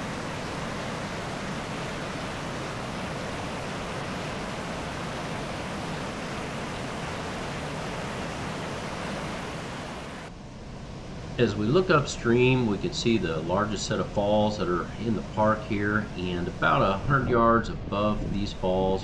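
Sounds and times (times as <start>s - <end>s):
water rushing over rocks: 0.0s - 10.3s.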